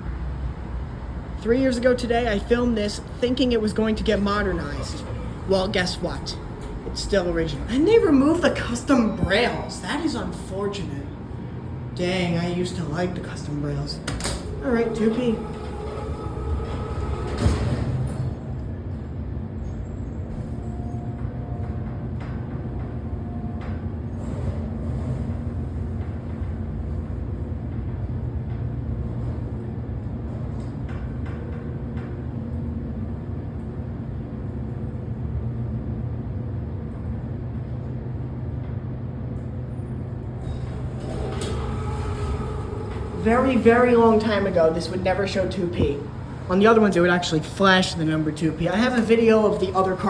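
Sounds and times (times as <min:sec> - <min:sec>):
elevator pump motor humming: 0:00.0 - 0:19.0, 0:40.2 - 0:50.0.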